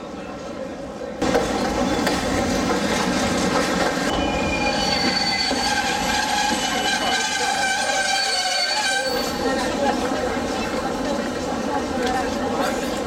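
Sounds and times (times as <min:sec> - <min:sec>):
train rumbling on rails: 0:00.0 - 0:13.0
steel wheels screeching on rails: 0:01.2 - 0:10.8.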